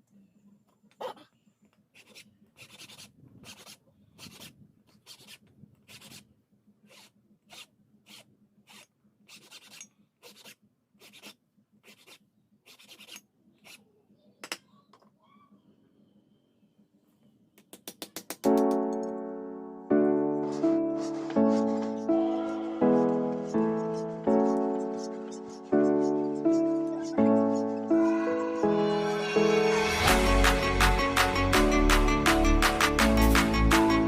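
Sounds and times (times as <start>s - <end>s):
hand file rasping on blade: 2.0s - 13.8s.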